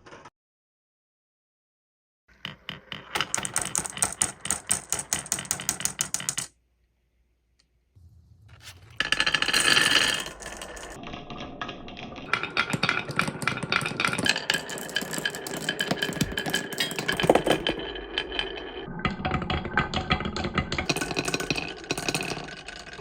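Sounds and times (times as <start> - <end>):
marbles rattling down wooden run: 2.3 - 6.5, 8.9 - 11.2, 12.2 - 18.7, 20.5 - 23.0.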